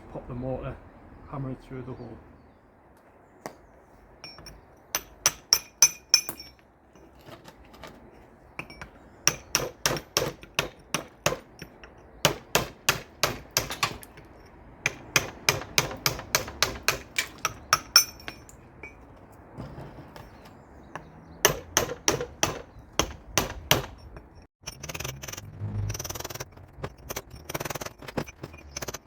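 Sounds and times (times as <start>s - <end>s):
hammer striking brick mortar: 4.2s - 6.6s, 8.6s - 25.4s.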